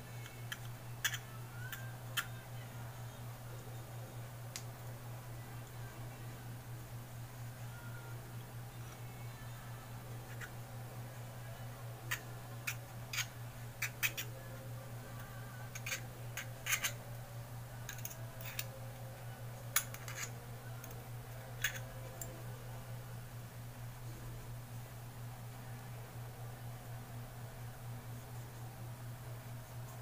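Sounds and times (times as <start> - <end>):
steady low hum: 0.0 - 30.0
small metal parts clicking: 0.2 - 2.4, 12.1 - 14.3, 15.7 - 17.1, 17.8 - 18.8, 19.7 - 21.0, 21.6 - 22.4.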